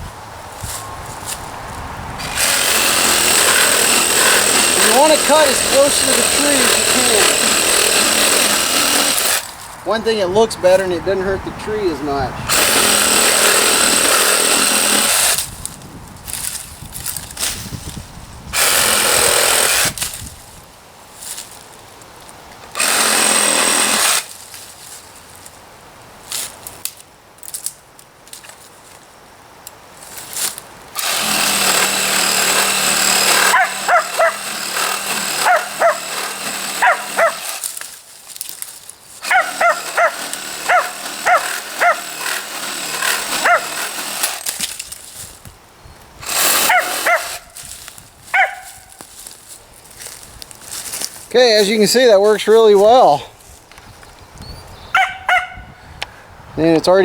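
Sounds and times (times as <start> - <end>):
reciprocating saw cutting limbs: 2.2 - 15.5, 18.6 - 20.3, 22.7 - 24.4, 30.4 - 45.4, 46.2 - 50.1
dog barking: 39.3 - 40.1, 48.4 - 48.7, 55.0 - 55.6.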